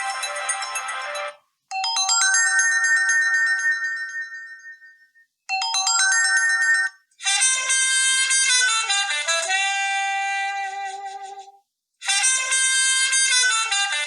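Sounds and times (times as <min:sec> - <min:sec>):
phone ringtone melody: 0:00.0 - 0:08.4.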